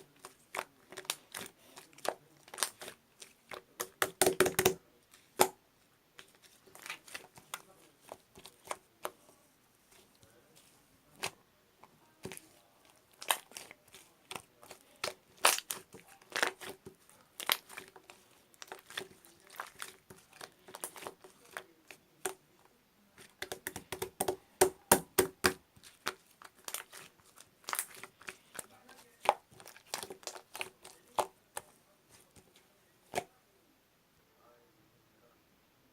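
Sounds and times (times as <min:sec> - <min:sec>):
slime squishing and popping: 0:00.2 - 0:05.6, 0:12.2 - 0:22.4, 0:23.2 - 0:31.4.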